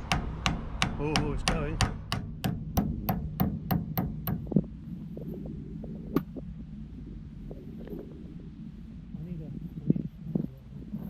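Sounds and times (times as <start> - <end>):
hammer striking steel shaft: 0.0 - 4.6.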